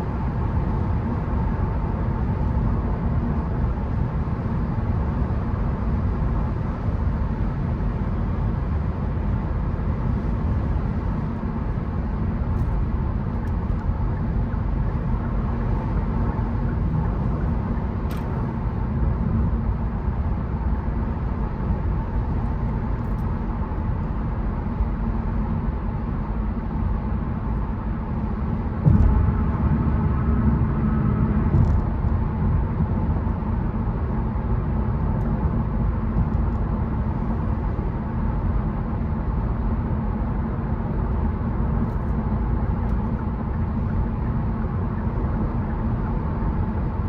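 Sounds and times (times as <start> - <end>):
car tyre and engine rumble: 0.0 - 47.0
loud knock: 28.8 - 30.2.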